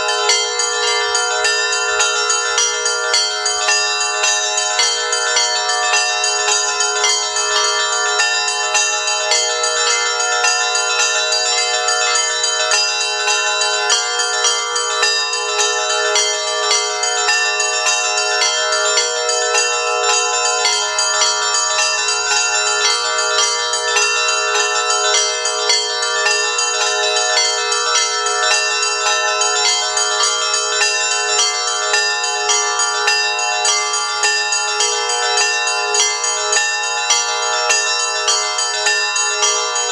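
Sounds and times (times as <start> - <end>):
church bells ringing: 0.0 - 39.9.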